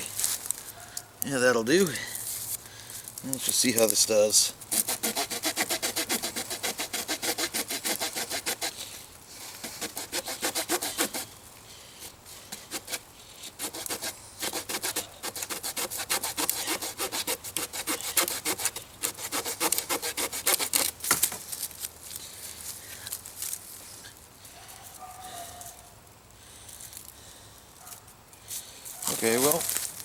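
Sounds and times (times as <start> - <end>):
saw blade cutting wood: 4.7 - 11.3, 12.5 - 21.2.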